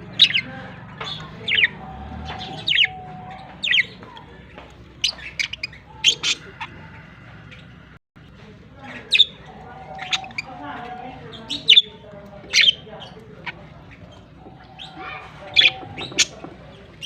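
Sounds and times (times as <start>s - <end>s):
budgies chirping and squawking: 0.0s - 17.0s.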